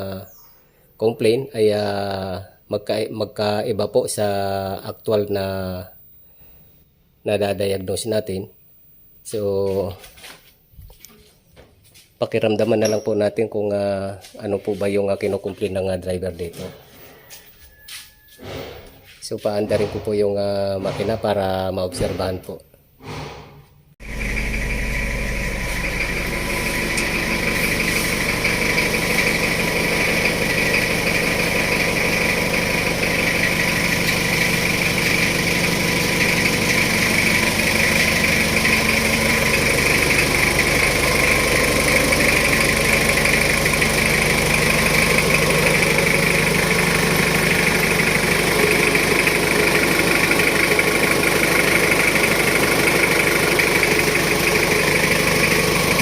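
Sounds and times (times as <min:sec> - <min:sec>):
car engine idling: 0:00.0 - 0:09.2, 0:24.0 - 0:56.0
high whine: 0:00.0 - 0:11.7, 0:24.0 - 0:51.0.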